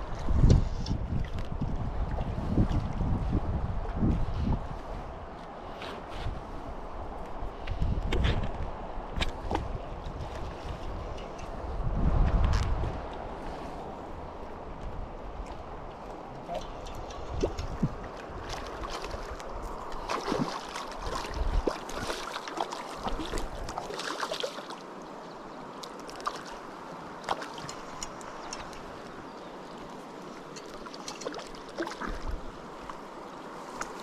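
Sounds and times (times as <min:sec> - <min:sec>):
water splashes and clicks: 0:00.0 - 0:03.1, 0:07.2 - 0:11.6, 0:14.7 - 0:25.1, 0:25.7 - 0:33.1, 0:33.7 - 0:34.0
wind rumble on microphone: 0:00.0 - 0:24.0, 0:27.0 - 0:34.0
river water rushing over stones: 0:18.0 - 0:34.0.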